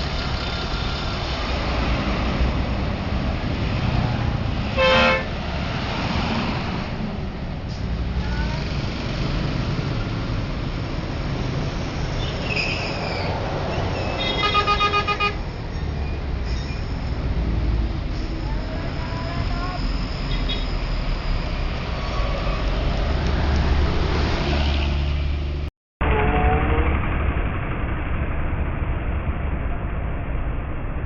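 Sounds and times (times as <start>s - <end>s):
passing road traffic: 0.0s - 31.0s
bus horn blast: 4.7s - 5.3s, 14.2s - 15.4s
rapid horn toots: 4.7s - 5.3s, 14.1s - 15.4s.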